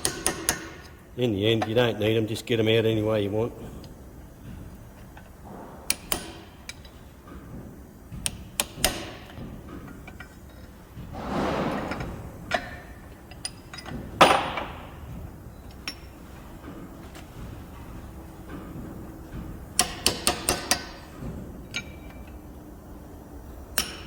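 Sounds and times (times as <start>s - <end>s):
hammer tapping metal punch: 0.0s - 1.0s, 5.5s - 7.5s, 11.7s - 16.2s, 19.3s - 22.4s, 23.7s - 24.0s.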